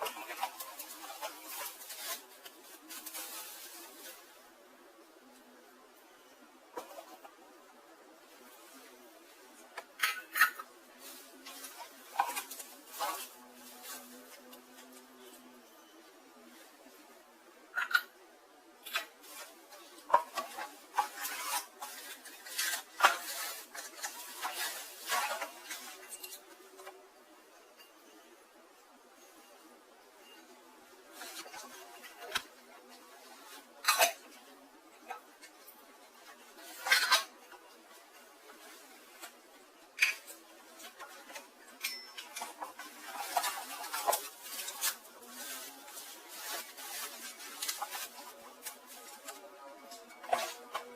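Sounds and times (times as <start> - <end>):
rustling: 0.0 - 28.0, 28.8 - 50.9
pots and pans clinking: 41.8 - 45.0.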